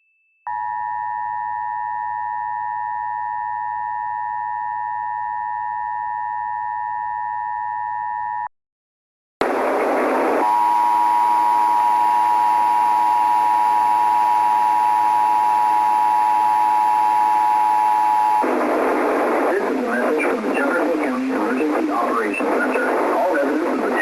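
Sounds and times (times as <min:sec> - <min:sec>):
radio static: 0:09.4 - 0:24.0.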